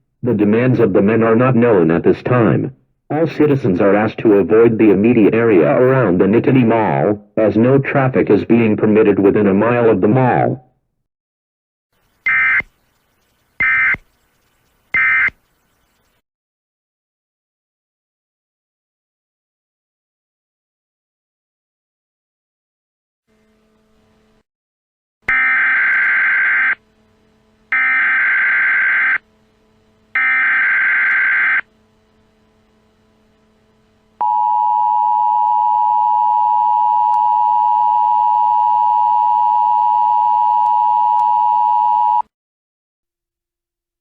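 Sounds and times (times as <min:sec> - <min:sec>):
digital data tone bursts: 0:12.0 - 0:16.2
two-tone attention signal: 0:34.2 - 0:42.2.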